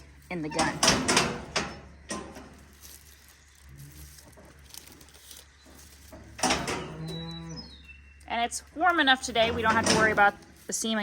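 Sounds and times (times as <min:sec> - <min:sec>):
faint cow moo: 0:06.8 - 0:07.8.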